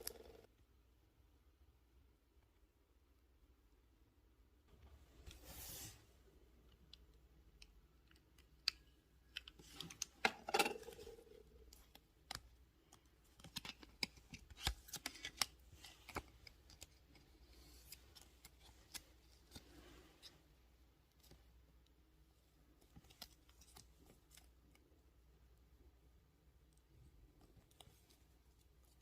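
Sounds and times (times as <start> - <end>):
rustling scrape: 5.3 - 6.2.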